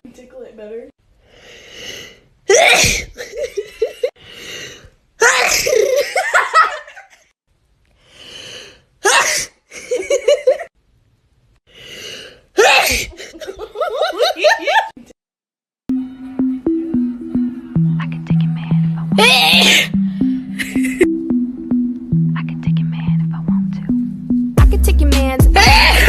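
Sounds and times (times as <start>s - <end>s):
sharp in-breath: 1.2s - 2.3s, 4.2s - 4.9s, 8.0s - 8.9s, 11.7s - 12.5s
person sneezing: 2.5s - 3.2s, 9.0s - 9.6s, 12.6s - 13.2s
short voiced sounds: 19.0s - 19.9s.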